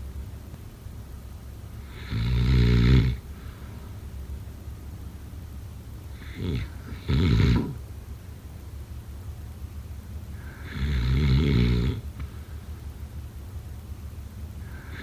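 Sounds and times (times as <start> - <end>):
low steady hum: 0.0 - 15.0
loud fluttering snore: 1.8 - 3.3, 6.1 - 7.8, 10.4 - 12.3, 14.6 - 15.0.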